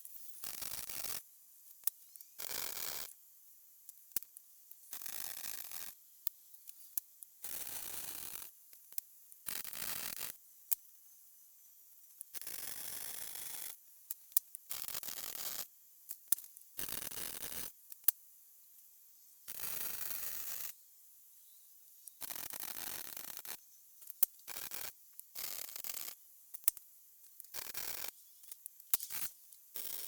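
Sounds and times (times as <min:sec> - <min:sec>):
welding arc crackling: 0:27.5 - 0:30.0.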